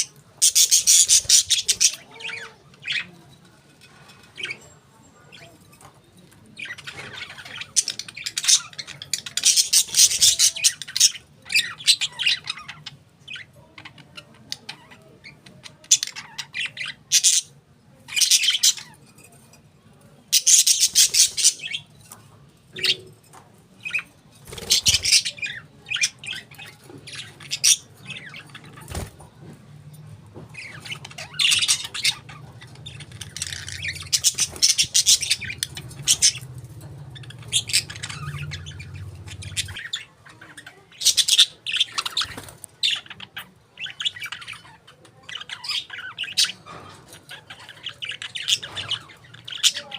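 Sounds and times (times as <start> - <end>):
budgerigars chirping: 0.0 - 3.0, 6.6 - 13.5, 20.4 - 21.9, 30.6 - 36.6, 37.2 - 49.9.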